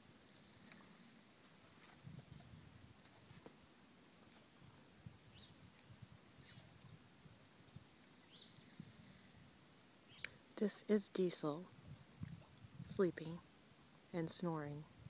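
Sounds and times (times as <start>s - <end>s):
small birds chirping: 4.0s - 7.0s, 7.9s - 10.5s.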